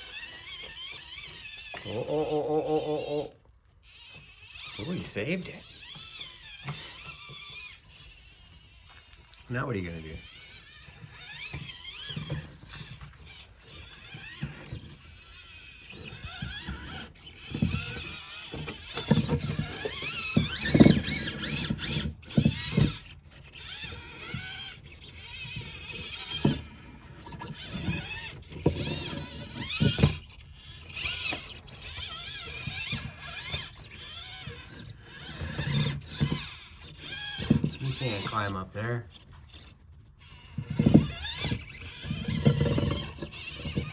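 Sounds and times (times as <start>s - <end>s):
small electric motor whining: 0.0s - 43.9s
toy truck thumping over rocks: 15.8s - 25.0s.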